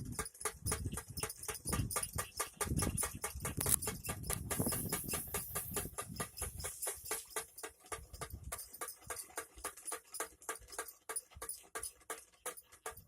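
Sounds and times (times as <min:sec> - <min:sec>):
bird-scaring device clicking: 0:00.7 - 0:08.0.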